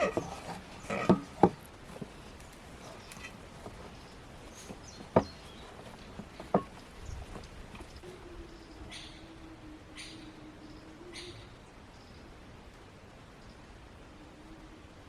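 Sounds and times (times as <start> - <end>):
sharp knocks: 0.0 - 1.6, 4.6 - 5.5, 6.2 - 6.8.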